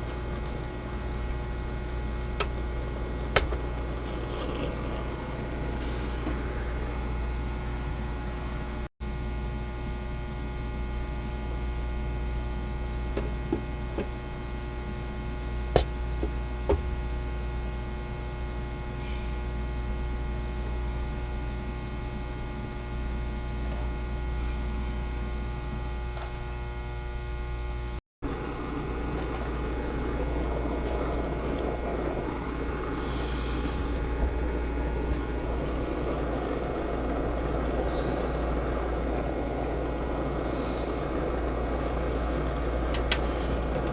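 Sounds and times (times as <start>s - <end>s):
rough mechanical noise: 0.0s - 8.9s, 28.2s - 43.9s
steady machinery hum: 0.0s - 43.9s.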